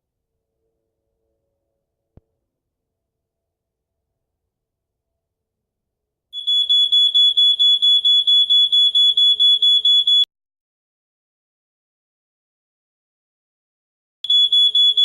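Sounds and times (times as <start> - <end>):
smoke detector alarm shrill pulsing: 6.4 - 10.3, 14.3 - 15.0.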